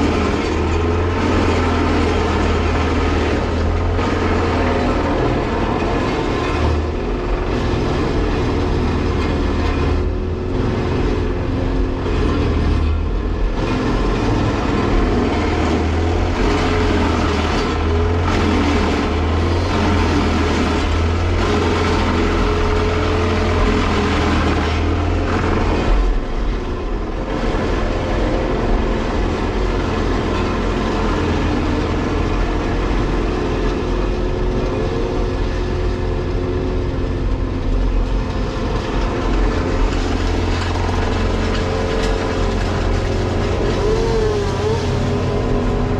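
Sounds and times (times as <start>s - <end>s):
deep machinery hum: 0.0s - 45.9s
excavator running: 0.0s - 45.9s
wood chipper running: 0.0s - 45.9s.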